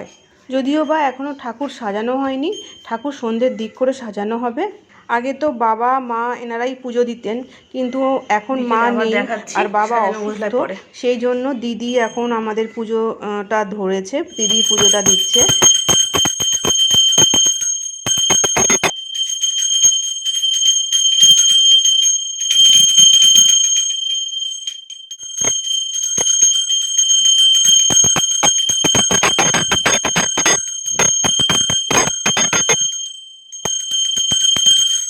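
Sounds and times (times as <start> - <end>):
metal bell ringing rapidly: 9.6 - 10.6, 11.3 - 12.7, 14.3 - 35.0
bell clapper strikes: 14.3 - 21.8, 24.8 - 35.0.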